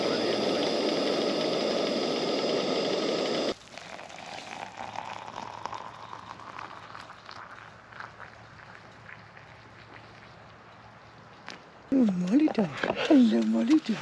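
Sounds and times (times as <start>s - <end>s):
gas stove burner hissing: 0.0s - 3.6s.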